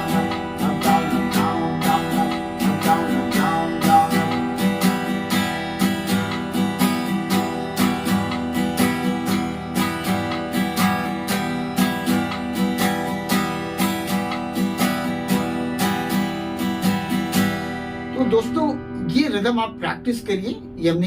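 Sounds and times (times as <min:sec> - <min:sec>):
acoustic guitar strumming: 0:00.0 - 0:21.0.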